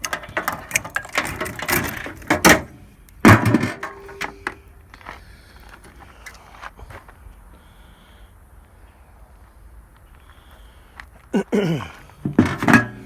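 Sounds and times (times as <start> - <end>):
loud clunk: 0.0 - 4.6, 12.2 - 13.0
metal parts clattering: 0.0 - 4.6, 12.2 - 13.0.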